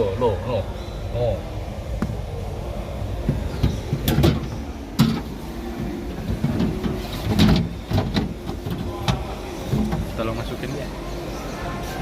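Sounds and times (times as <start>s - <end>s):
hard plastic knocks and clatters: 3.2s - 10.2s.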